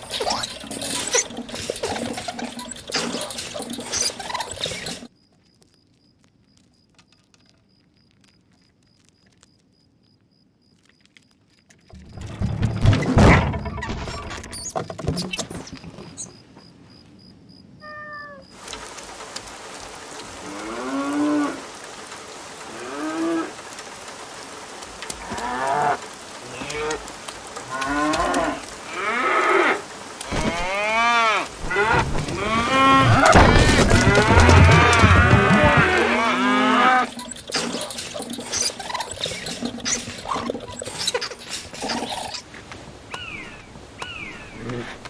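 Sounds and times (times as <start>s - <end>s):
animal calls rising and falling: 27.7s - 42.5s.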